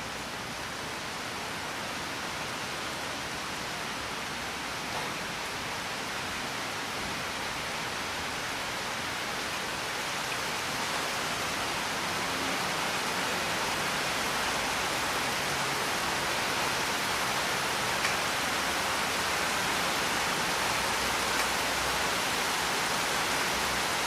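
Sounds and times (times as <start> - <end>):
steady rain hiss: 0.0 - 24.0.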